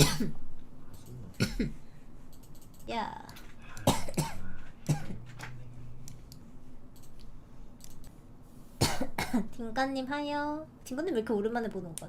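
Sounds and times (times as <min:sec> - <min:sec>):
woman coughing: 0:00.0 - 0:00.4, 0:01.4 - 0:01.8, 0:03.8 - 0:05.2, 0:08.8 - 0:09.6.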